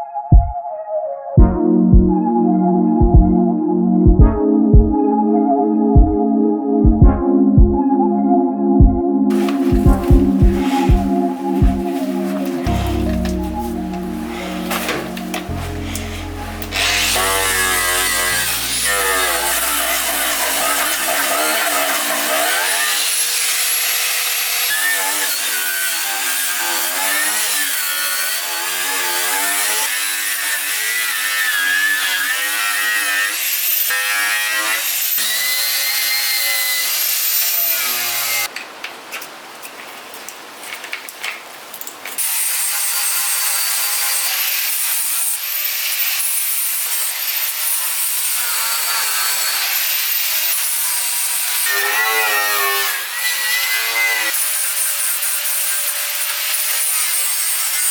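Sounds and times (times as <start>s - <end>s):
power tool motor whine: 14.2s - 23.0s.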